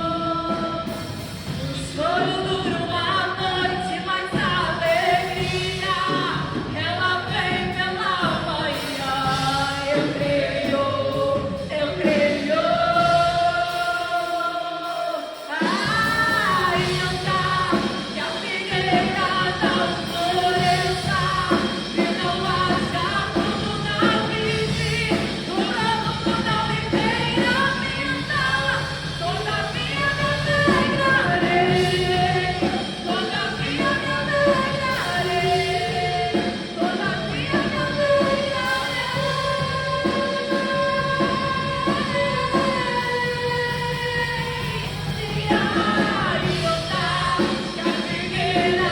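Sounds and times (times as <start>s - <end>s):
band playing drums and bass: 0.0s - 48.9s
person singing lead vocal: 0.0s - 48.9s.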